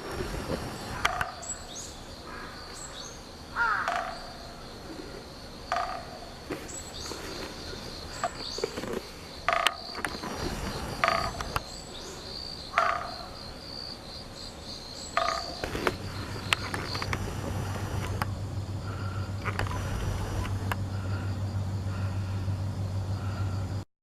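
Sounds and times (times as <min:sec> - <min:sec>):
pulsing high insect trill: 0:00.0 - 0:23.9
low hum: 0:04.6 - 0:12.6, 0:14.1 - 0:23.8.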